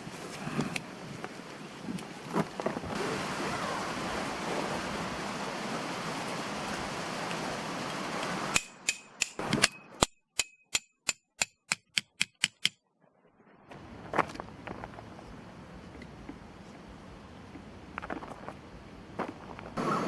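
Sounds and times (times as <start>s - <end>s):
sharp metallic clicks: 8.5s - 12.8s.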